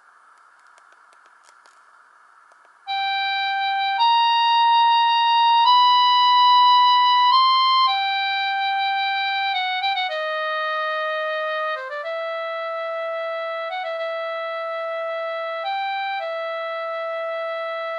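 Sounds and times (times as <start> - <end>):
faint hiss: 0.0 - 17.9
light clicks: 0.3 - 2.8.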